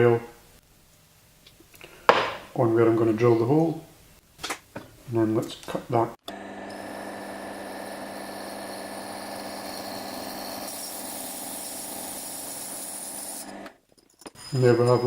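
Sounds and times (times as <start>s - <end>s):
power drill grinding glass: 6.7s - 15.0s.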